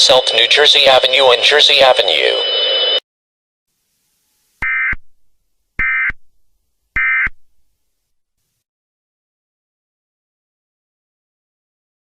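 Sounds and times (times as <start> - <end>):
digital data tone bursts: 0.0 - 3.0.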